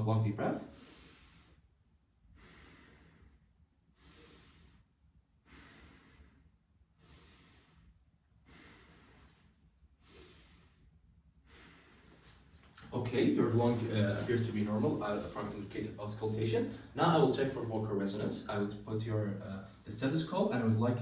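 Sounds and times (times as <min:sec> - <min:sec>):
slow deep breathing: 0:00.6 - 0:13.0.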